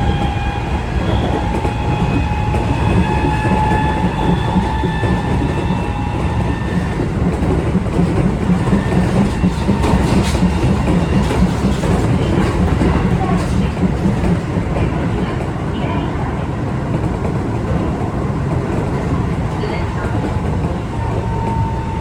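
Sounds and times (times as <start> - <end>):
train motor whine: 0.0 - 12.3
clacks over rail joints: 0.0 - 21.7
wheels rumbling on rail: 0.0 - 22.0.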